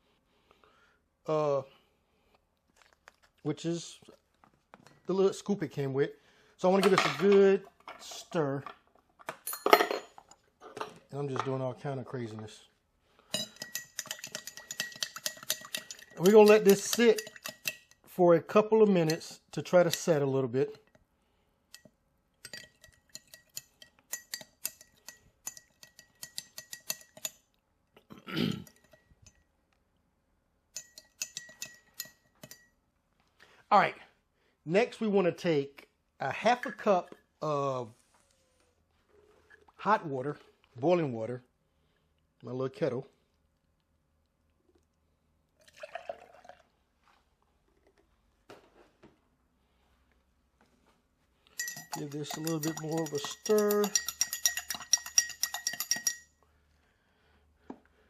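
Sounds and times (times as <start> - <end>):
spoon clinking against glass: 13.3 - 18.0, 21.8 - 27.4, 30.8 - 32.7, 51.5 - 56.3
water pouring from kettle: 45.6 - 46.7.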